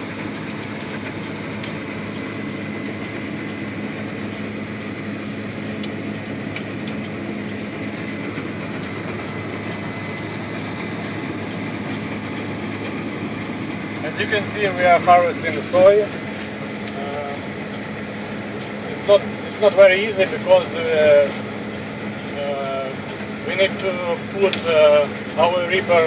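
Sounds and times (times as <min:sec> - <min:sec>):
combine harvester drone: 0:00.0 - 0:26.0.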